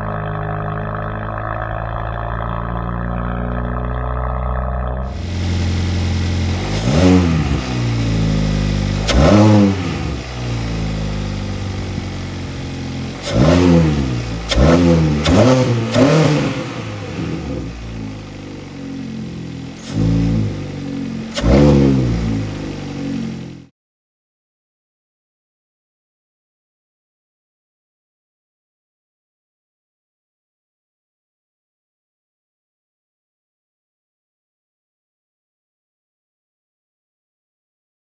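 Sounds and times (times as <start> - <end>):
car engine idling and revving: 0.0 - 23.7.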